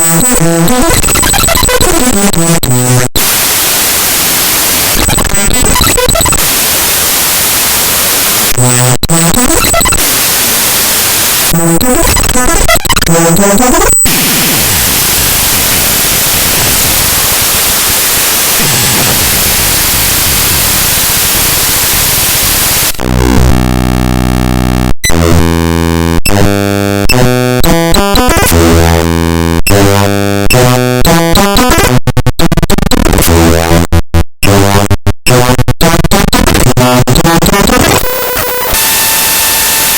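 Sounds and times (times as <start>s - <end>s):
harsh buzzing tones: 0.0s - 32.7s
loud static hiss: 3.2s - 8.8s, 9.4s - 12.4s, 14.1s - 23.0s, 38.0s - 39.9s.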